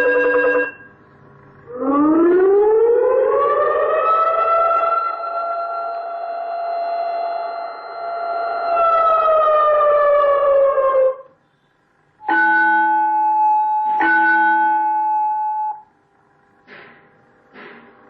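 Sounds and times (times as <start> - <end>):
electronic siren tone: 0.0 - 0.9, 1.6 - 11.4, 12.2 - 16.0.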